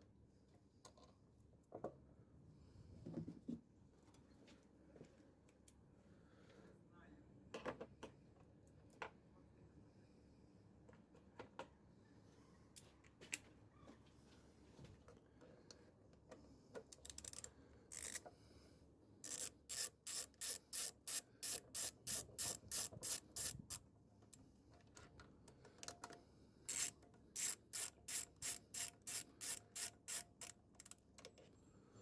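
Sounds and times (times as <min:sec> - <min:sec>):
ratchet wrench clicking: 0:17.0 - 0:18.2, 0:19.2 - 0:23.8, 0:26.7 - 0:31.0.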